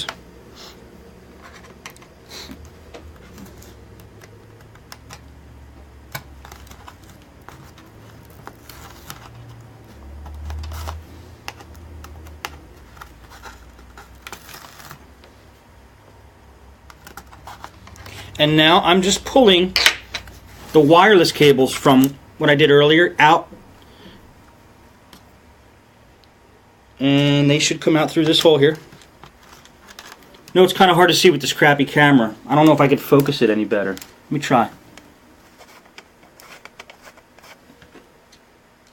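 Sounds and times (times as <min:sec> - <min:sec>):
plastic parts clicking and scraping: 0:01.4 - 0:05.3, 0:06.1 - 0:15.3, 0:16.8 - 0:18.4, 0:28.0 - 0:30.6, 0:35.5 - 0:38.9.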